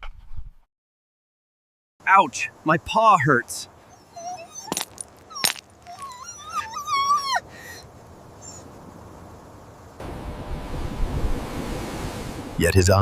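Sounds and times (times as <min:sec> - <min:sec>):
dog whining: 0:03.9 - 0:07.8.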